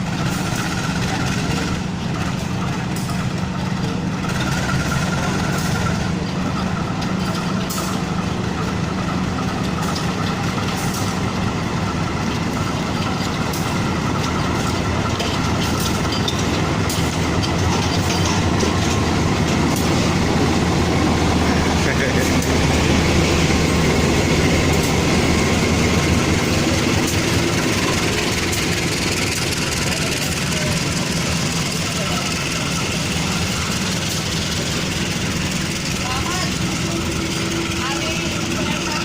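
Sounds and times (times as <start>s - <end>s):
diesel locomotive engine hum: 0.0s - 39.0s
rail and train noise: 0.0s - 39.0s.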